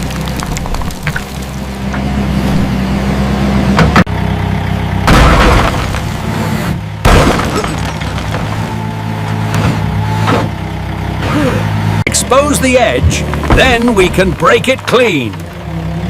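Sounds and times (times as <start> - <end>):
digging and breaking bursts: 0.0 - 1.7, 7.0 - 8.8
mini excavator engine running: 0.0 - 16.0.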